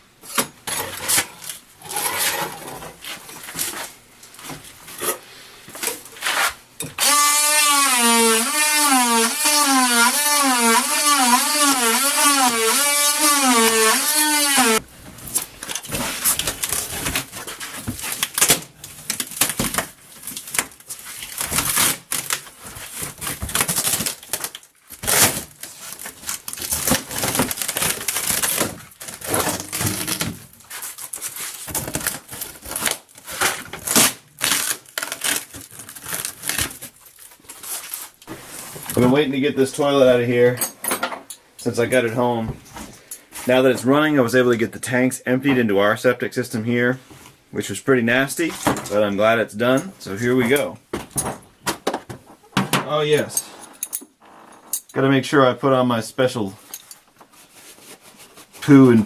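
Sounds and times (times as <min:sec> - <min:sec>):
oscillating multi-tool cutting wood: 0:07.0 - 0:14.8.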